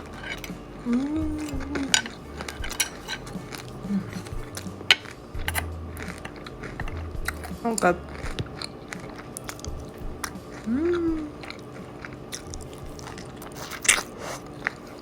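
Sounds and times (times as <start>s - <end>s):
person chewing crunchy crackers: 0.0s - 15.0s
person humming: 0.8s - 2.3s, 3.6s - 4.8s, 10.4s - 11.5s.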